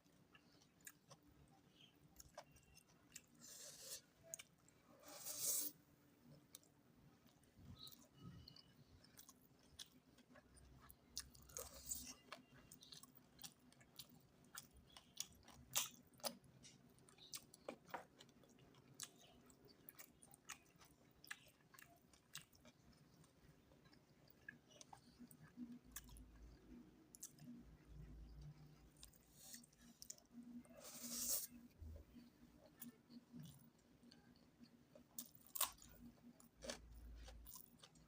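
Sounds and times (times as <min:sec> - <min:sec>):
person chewing with wet smacks: 0:00.0 - 0:03.6, 0:04.2 - 0:04.8, 0:06.4 - 0:38.0.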